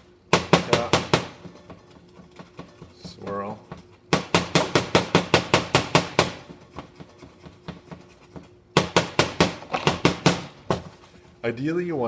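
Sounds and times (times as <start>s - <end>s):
pitcher knocking on counter: 0.4s - 1.6s.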